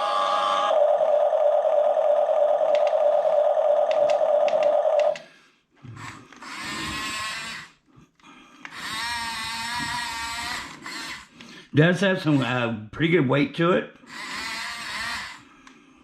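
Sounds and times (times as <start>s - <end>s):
toy electric motor whining: 0.0s - 5.2s, 5.8s - 7.8s, 8.6s - 12.6s, 14.0s - 15.7s.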